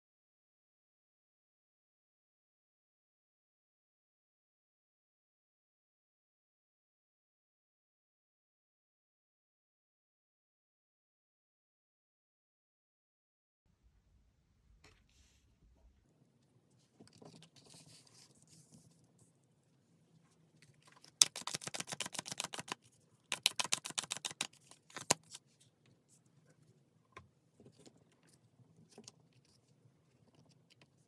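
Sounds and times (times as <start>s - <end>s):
faint card handling: 20.6s - 25.5s
cards being riffle-shuffled: 20.8s - 25.4s.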